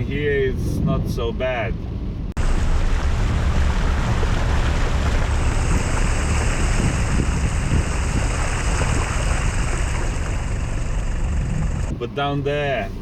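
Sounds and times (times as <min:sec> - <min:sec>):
deep rumble: 0:00.0 - 0:13.0
tyres rushing through water: 0:00.0 - 0:13.0
wind noise on microphone: 0:02.0 - 0:12.2.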